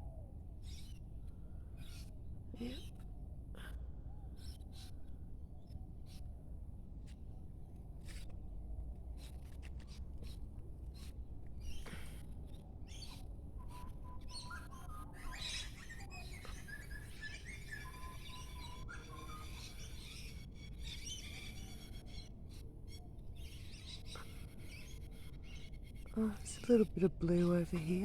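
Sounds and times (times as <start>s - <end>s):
low steady background rumble: 0.0s - 28.0s
birds chirping and trilling: 10.9s - 28.0s.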